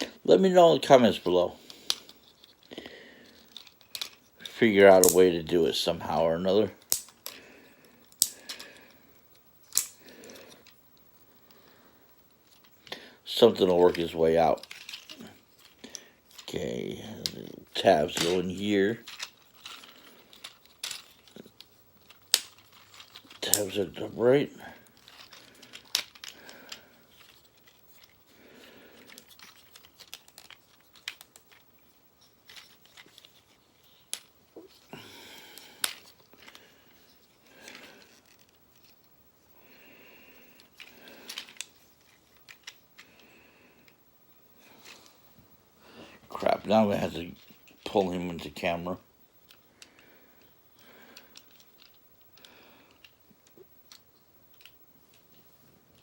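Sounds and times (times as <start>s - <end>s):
plastic toy parts clicking: 3.3s - 5.2s, 6.8s - 7.4s, 8.0s - 8.7s, 9.6s - 10.8s, 13.9s - 16.6s, 19.0s - 23.7s, 24.8s - 28.2s, 29.0s - 31.6s, 32.4s - 34.9s, 40.6s - 42.8s, 51.2s - 55.4s
plastic rustling: 11.5s - 56.0s
plastic toy clicks and rattles: 18.1s - 23.7s, 29.0s - 31.6s.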